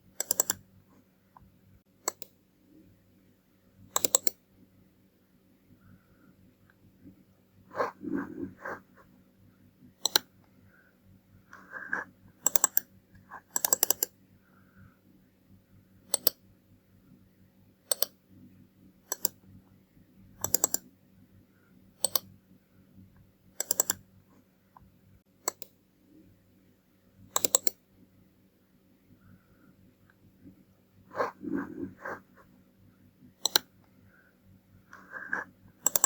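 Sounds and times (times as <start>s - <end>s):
faint steady hum: 0.0s - 36.0s
computer mouse buttons clicking: 0.2s - 0.6s, 1.4s - 2.4s, 3.9s - 4.4s, 10.0s - 10.3s, 11.5s - 14.2s, 16.1s - 16.4s, 17.9s - 18.2s, 19.1s - 19.4s, 20.4s - 20.9s, 22.0s - 22.3s, 23.6s - 24.0s, 24.8s - 25.8s, 27.3s - 27.8s, 33.4s - 33.7s, 34.9s - 36.0s.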